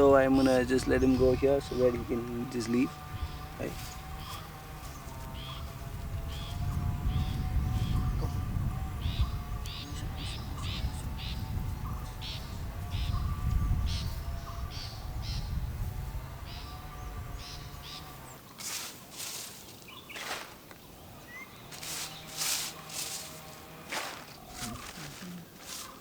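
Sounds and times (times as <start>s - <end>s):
birds calling: 0.0s - 26.0s
rustling swishes: 18.6s - 20.7s, 21.7s - 26.0s.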